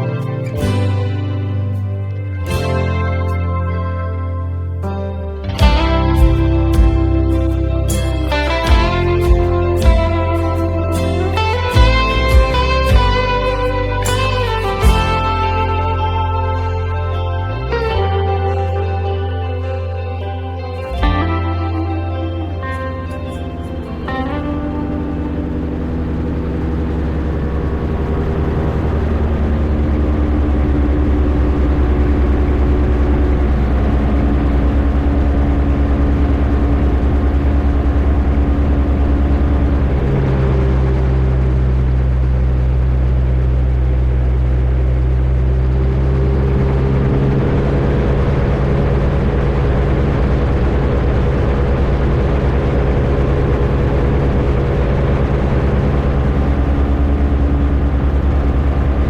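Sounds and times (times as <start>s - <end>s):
light aircraft engine and propeller: 21.6s - 59.0s.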